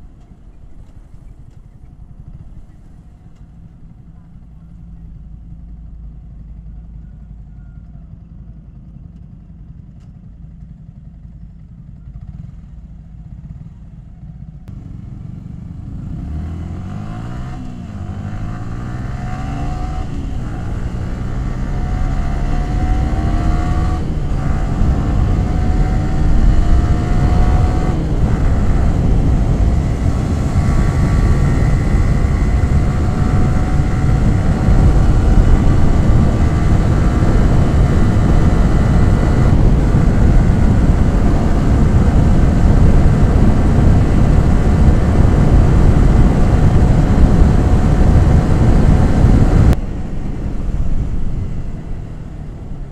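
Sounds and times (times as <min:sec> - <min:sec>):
motorcycle engine accelerating: 0:00.0 - 0:52.9
wind noise: 0:16.0 - 0:52.9.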